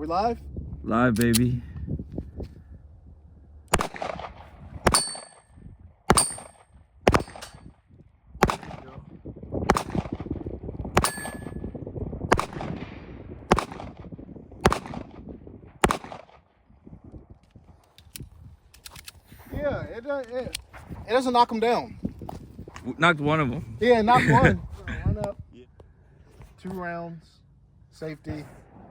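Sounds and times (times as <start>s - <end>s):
gunshots: 3.7s - 5.4s, 6.1s - 7.6s, 8.4s - 9.0s, 9.7s - 10.3s, 11.0s - 11.6s, 12.3s - 15.2s, 15.8s - 16.4s
steel plate ringing: 4.9s - 5.4s, 6.1s - 6.6s, 11.0s - 11.6s.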